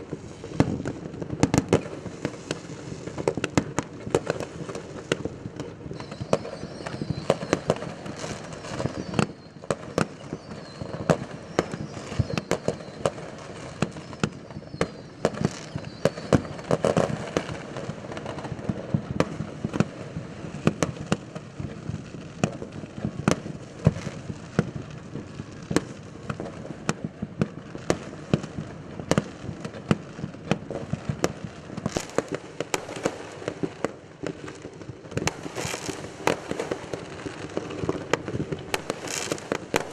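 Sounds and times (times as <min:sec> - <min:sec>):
falling firework whistles: 0:00.0 - 0:39.9
fireworks bangs and crackles: 0:00.0 - 0:39.9.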